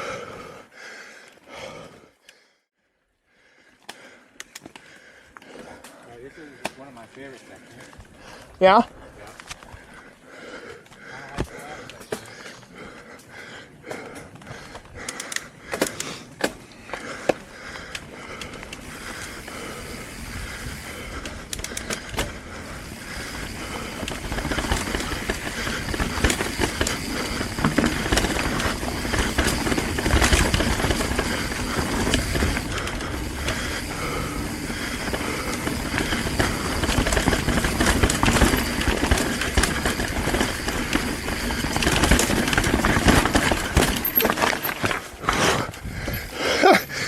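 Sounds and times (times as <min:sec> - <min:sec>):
bike frame rattling: 0:14.0 - 0:47.0
bike tyres crunching over rock: 0:15.9 - 0:46.9.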